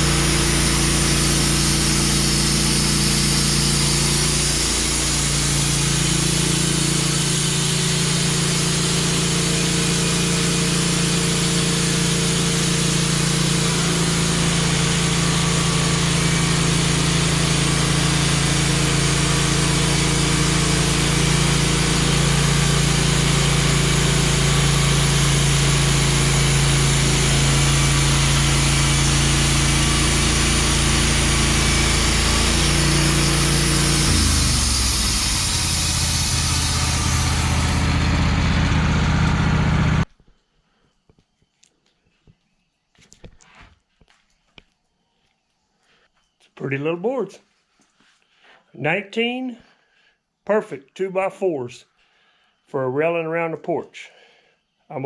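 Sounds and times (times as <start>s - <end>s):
band blade cutting log: 0.0s - 40.1s
band sawmill engine: 0.0s - 40.1s.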